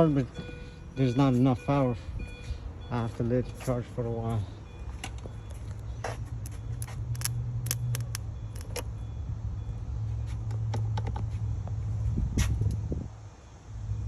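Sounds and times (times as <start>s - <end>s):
sharp clicks and knocks: 6.4s - 8.9s.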